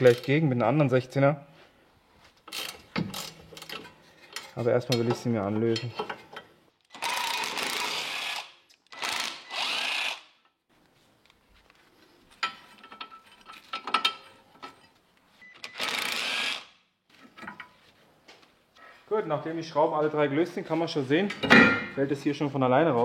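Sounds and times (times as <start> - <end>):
power ratchet spinning: 6.9 - 10.3, 15.6 - 16.7.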